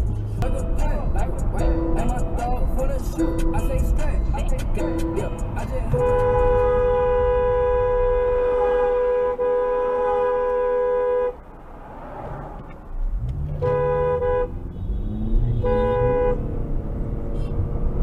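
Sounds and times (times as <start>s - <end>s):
car horn honking: 4.8s - 11.5s, 13.5s - 16.5s.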